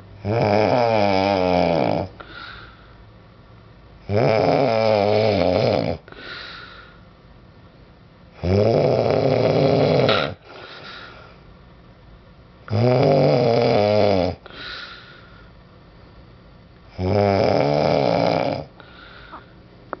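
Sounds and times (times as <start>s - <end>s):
loud snoring: 0.2s - 2.2s, 4.0s - 6.1s, 8.4s - 10.4s, 12.7s - 14.4s, 16.9s - 19.4s
soft breathing: 2.1s - 3.1s, 6.1s - 7.1s, 10.4s - 11.5s, 14.4s - 16.3s, 18.7s - 19.7s.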